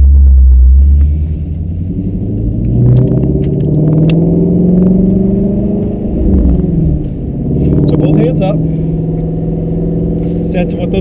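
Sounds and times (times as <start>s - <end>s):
car engine rumbling: 0.0s - 11.0s.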